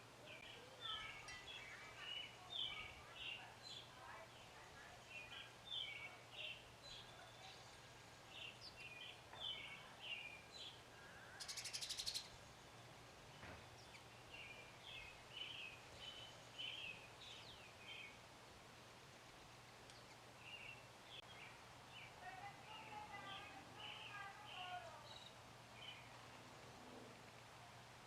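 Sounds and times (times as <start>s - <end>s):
small birds chirping: 0.2s - 18.3s, 19.1s - 28.0s.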